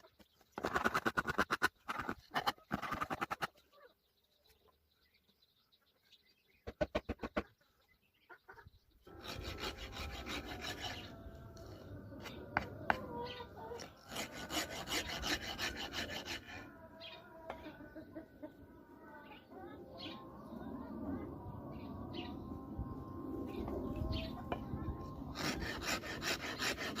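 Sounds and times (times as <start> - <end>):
wood rasp scraping wooden handle: 0.6 - 3.4, 9.1 - 11.1, 13.8 - 16.6, 25.3 - 27.0.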